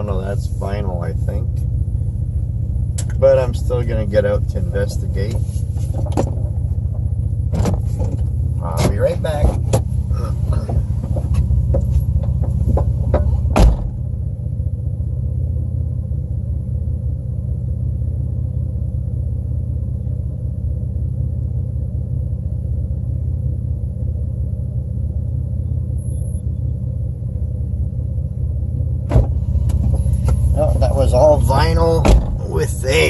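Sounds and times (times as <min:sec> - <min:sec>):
engine idling: 0:00.0 - 0:33.0
car door shutting: 0:07.5 - 0:14.1, 0:29.0 - 0:30.6, 0:31.8 - 0:32.6.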